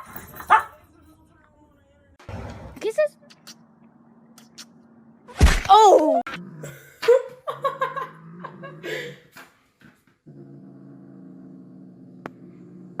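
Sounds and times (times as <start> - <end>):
dog growling: 7.6 - 9.2, 10.2 - 13.0.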